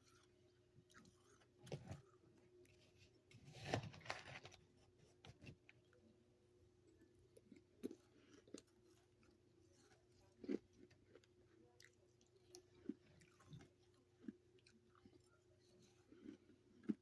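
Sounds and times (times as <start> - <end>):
faint steady hum: 0.0 - 17.0
person chewing crunchy frost: 7.4 - 17.0.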